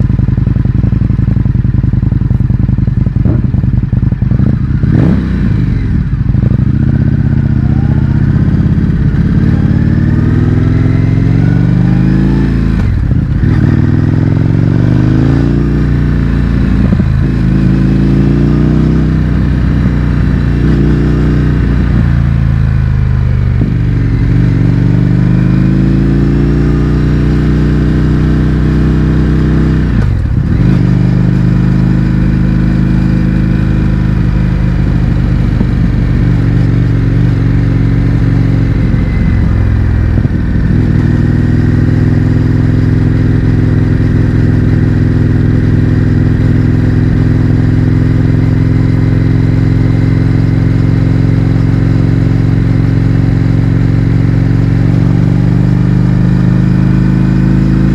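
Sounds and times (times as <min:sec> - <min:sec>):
motorcycle engine riding: 0:00.0 - 0:57.9.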